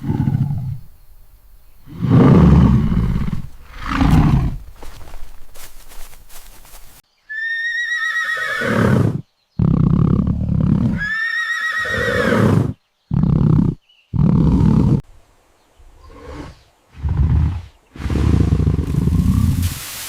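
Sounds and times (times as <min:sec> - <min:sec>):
horse whinnying: 0:01.9 - 0:05.5, 0:07.3 - 0:09.2, 0:10.9 - 0:12.7.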